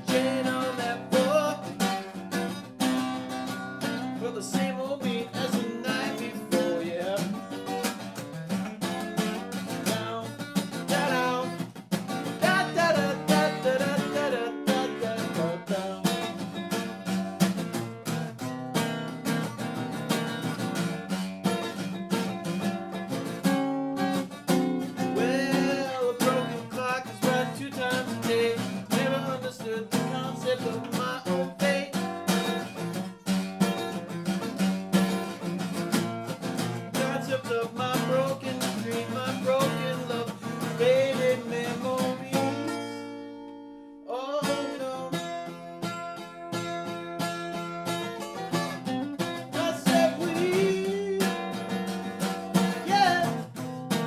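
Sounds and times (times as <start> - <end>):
acoustic guitar strummed and picked: 0.0 - 54.0.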